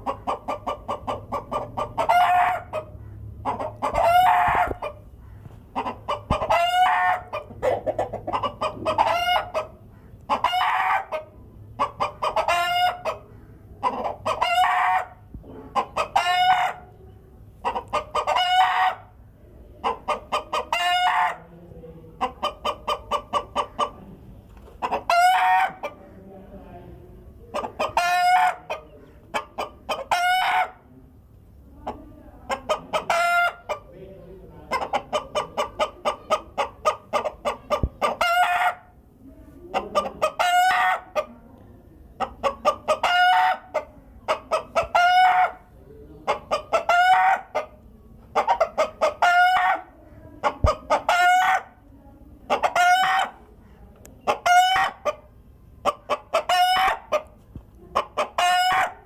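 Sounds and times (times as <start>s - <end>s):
hen cackling and squawking: 0.0s - 21.5s, 22.2s - 24.0s, 24.6s - 26.2s, 27.4s - 30.9s, 31.8s - 33.9s, 34.7s - 39.0s, 39.7s - 41.4s, 42.2s - 51.8s, 52.5s - 59.0s.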